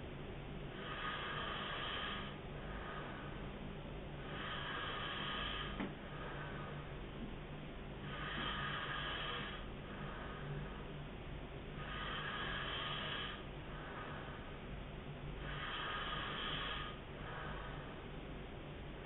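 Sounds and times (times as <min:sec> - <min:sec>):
man snoring: 0:00.7 - 0:03.4, 0:04.2 - 0:06.8, 0:08.0 - 0:10.8, 0:11.8 - 0:14.5, 0:15.4 - 0:18.0.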